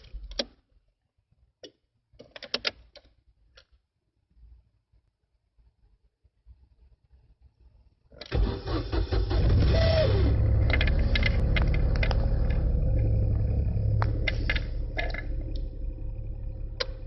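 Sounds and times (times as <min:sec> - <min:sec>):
car engine starting and running: 0:08.3 - 0:17.0
starter motor cranking: 0:08.3 - 0:17.0.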